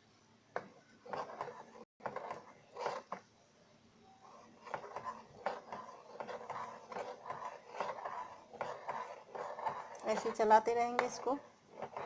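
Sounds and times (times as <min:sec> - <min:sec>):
spoon scraping steel bowl: 0:04.4 - 0:12.0.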